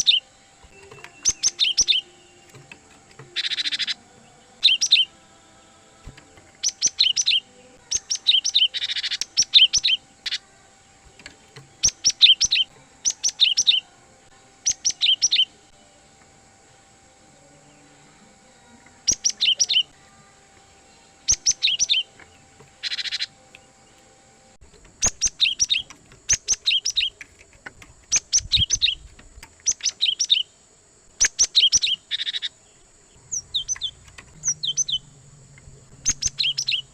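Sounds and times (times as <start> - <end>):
bird singing sharp high notes: 0.0 - 5.3, 6.1 - 13.9, 14.6 - 15.7, 19.0 - 20.0, 20.9 - 23.8, 33.2 - 35.2, 35.9 - 36.9.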